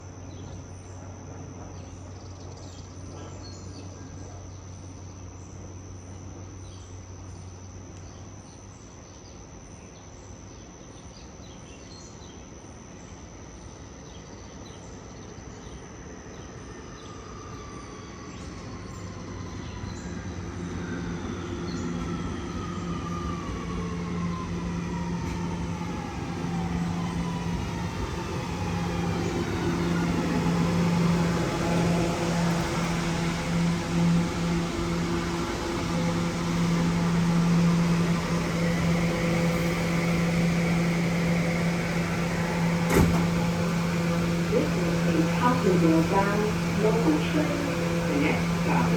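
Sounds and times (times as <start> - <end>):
electric train propulsion whine: 0.0 - 48.9
train cars rumbling on rails: 18.9 - 48.9.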